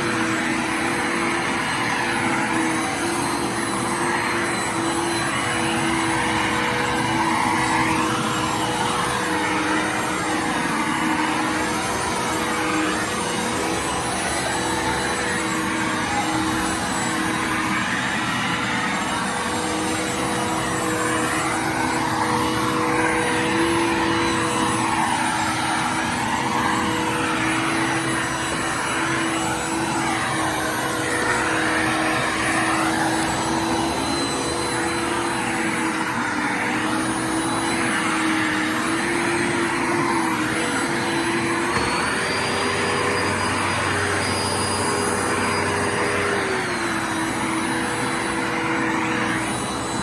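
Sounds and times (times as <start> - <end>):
vacuum cleaner running: 0.0 - 50.0.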